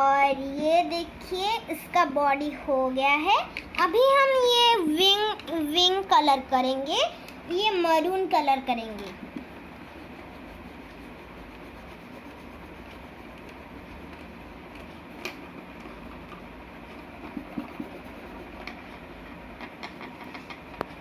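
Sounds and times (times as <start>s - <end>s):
pen rubbing on paper: 9.4s - 14.1s, 16.9s - 18.8s.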